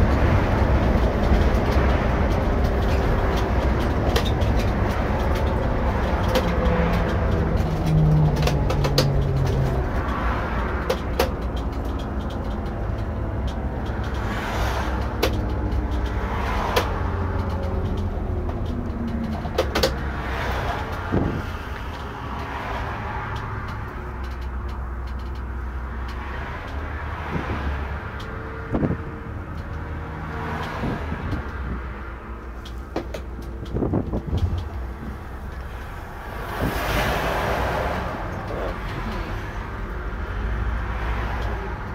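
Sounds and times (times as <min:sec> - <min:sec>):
coach engine hum: 0:00.0 - 0:41.9
body knocks and rattles: 0:32.7 - 0:36.8.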